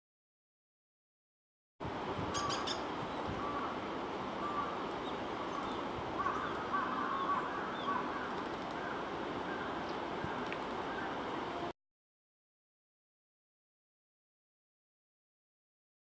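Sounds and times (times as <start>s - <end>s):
crows cawing: 3.4s - 3.8s, 4.4s - 4.8s, 6.2s - 11.2s.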